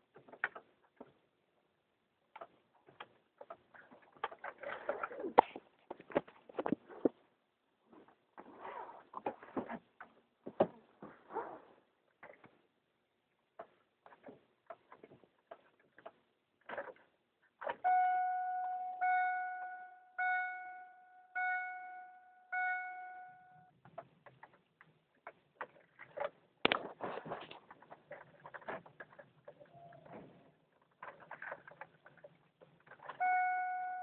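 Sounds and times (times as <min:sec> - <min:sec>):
car warning chime dinging: 0:17.8 - 0:23.7, 0:33.2 - 0:34.0.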